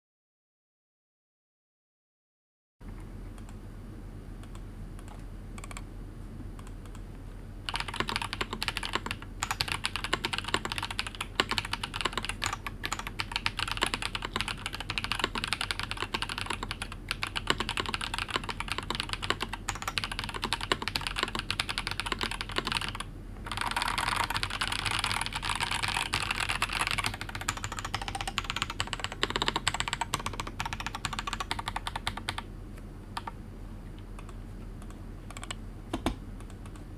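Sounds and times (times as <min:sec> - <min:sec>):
low steady hum: 0:02.8 - 0:36.9
mechanical keyboard typing: 0:04.4 - 0:05.8, 0:07.7 - 0:32.4, 0:34.2 - 0:36.8.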